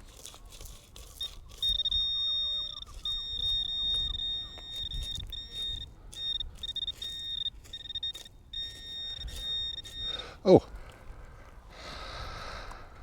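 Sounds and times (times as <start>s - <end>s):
metal detector high-pitched tone: 0.9s - 10.4s.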